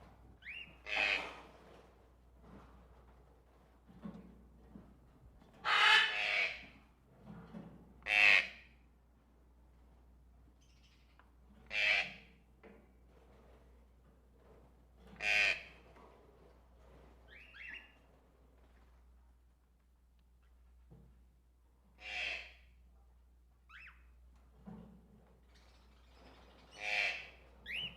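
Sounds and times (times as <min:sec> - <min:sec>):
birds squawking harshly: 0:05.6 - 0:06.6, 0:26.6 - 0:27.9.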